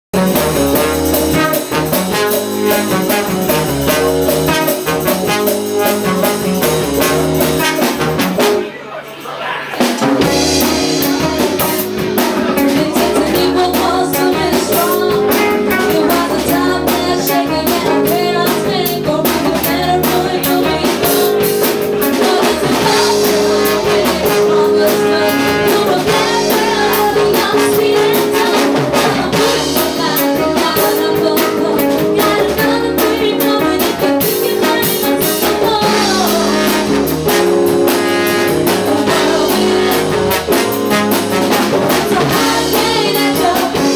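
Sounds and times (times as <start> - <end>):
drum kit beat: 0.1 - 8.6, 9.7 - 43.9
bass: 0.1 - 8.7, 9.8 - 43.9
guitar: 0.2 - 43.9
person singing: 10.2 - 37.4, 38.5 - 40.7, 41.4 - 43.9.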